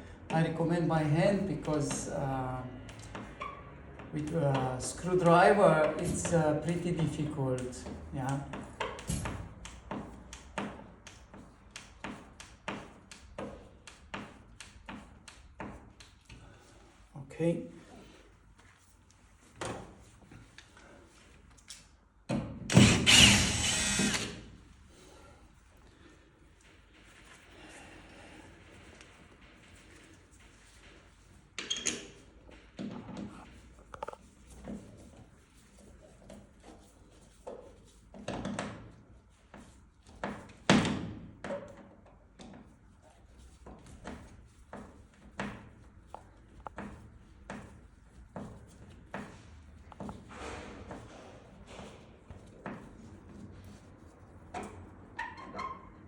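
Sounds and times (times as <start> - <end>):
power drill running: 22.7 - 24.5.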